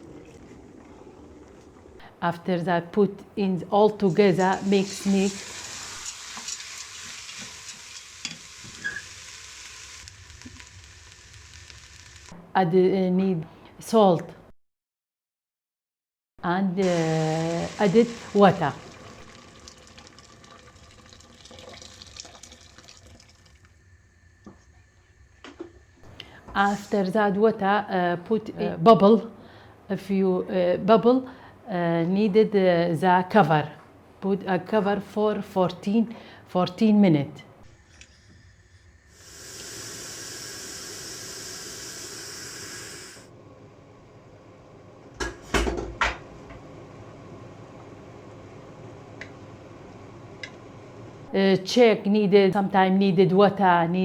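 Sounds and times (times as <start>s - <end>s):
water pouring into a pot: 4.5s - 12.3s, 17.6s - 24.0s.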